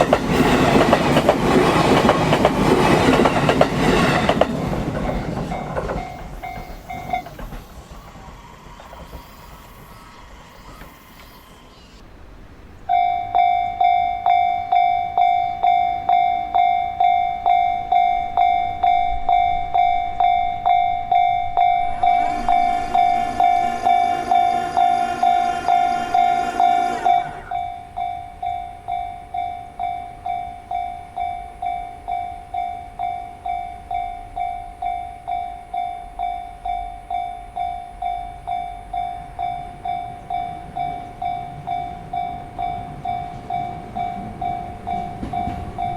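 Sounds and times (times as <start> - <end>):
train passing: 0.0 - 45.9
level-crossing bell ringing: 12.9 - 45.9.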